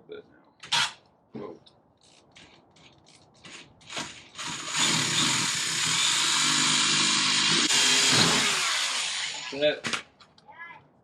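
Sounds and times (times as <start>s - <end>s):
power drill drilling metal: 3.8s - 9.7s.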